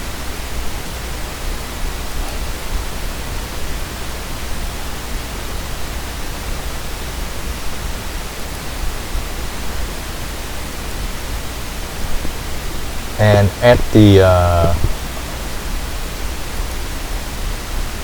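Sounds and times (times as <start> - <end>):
person narrating: 13.2 - 15.0.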